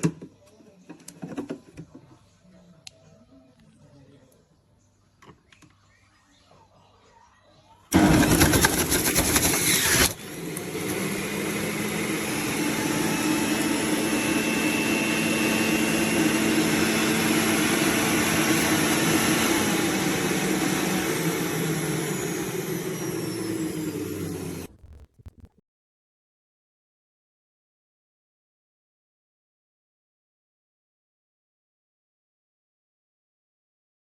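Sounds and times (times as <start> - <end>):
electric juicer motor running: 8.0 - 25.0.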